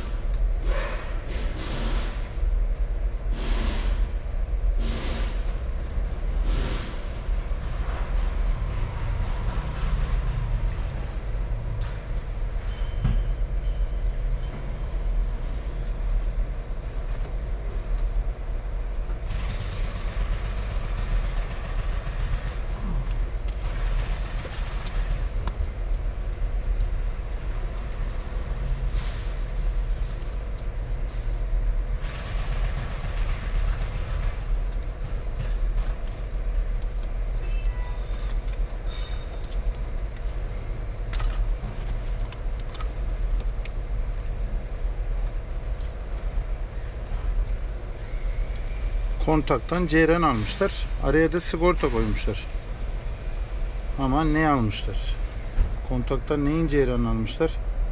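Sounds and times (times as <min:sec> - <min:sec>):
engine and road rumble: 0:00.0 - 0:57.9.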